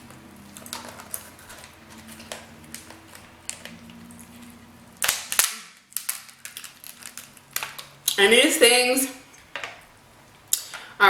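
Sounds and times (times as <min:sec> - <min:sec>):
crab shells cracking by hand: 0:00.0 - 0:04.4, 0:05.0 - 0:08.2.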